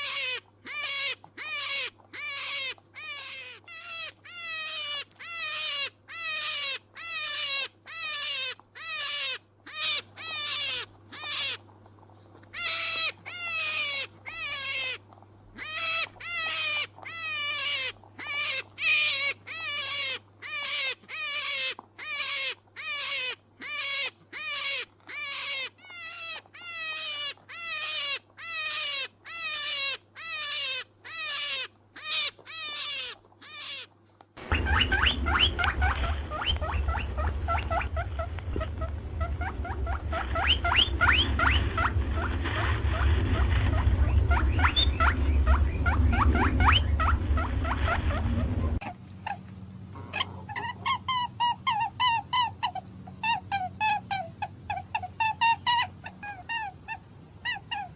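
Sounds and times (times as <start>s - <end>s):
animal calls falling in pitch: 31.1s - 49.4s
rapid high squeaks: 32.6s - 48.8s
loud low rumble: 34.4s - 48.8s.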